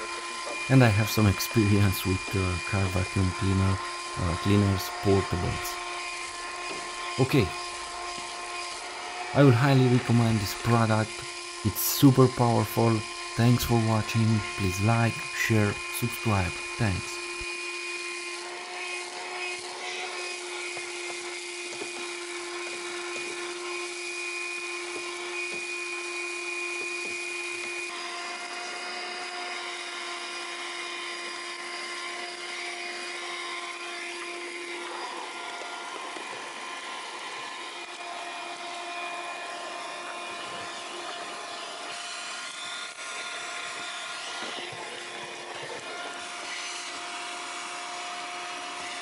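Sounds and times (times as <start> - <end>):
handheld vacuum motor whine: 0.0 - 49.0.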